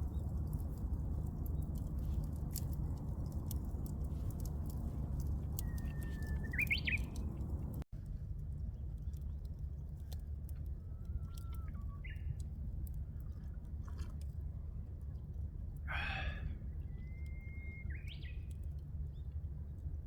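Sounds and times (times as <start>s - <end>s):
steady low rumble: 0.0s - 17.0s
bird whistling song: 5.5s - 7.4s, 11.0s - 12.3s, 16.8s - 18.5s.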